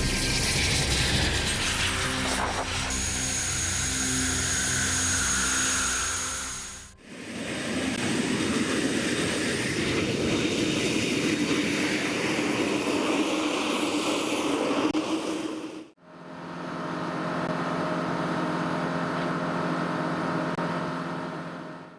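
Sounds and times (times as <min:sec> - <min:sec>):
drone with held tones: 0:00.0 - 0:07.0.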